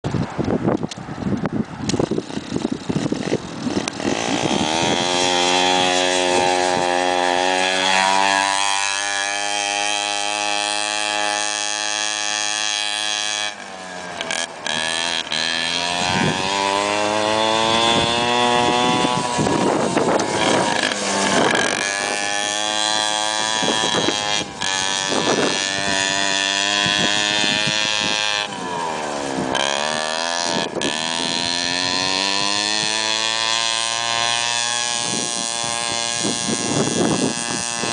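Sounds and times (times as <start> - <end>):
small engine revving: 1.8 - 37.9.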